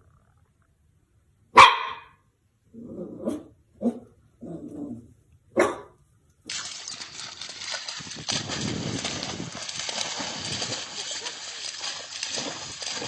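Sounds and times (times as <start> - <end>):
dog barking: 1.5 - 2.2, 5.5 - 6.0.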